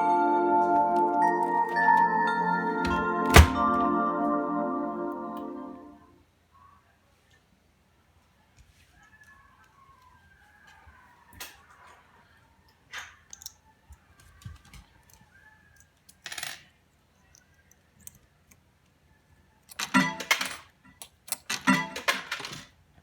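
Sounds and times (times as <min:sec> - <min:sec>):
tokens clattering: 0:16.1 - 0:16.8, 0:19.7 - 0:22.8
metal tokens clinking into slot: 0:19.7 - 0:22.7.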